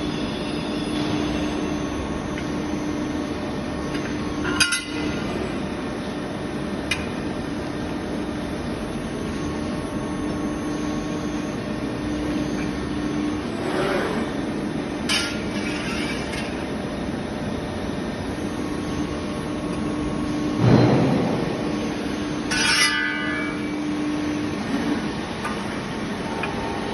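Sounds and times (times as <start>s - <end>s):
loud thump: 20.6s - 21.5s.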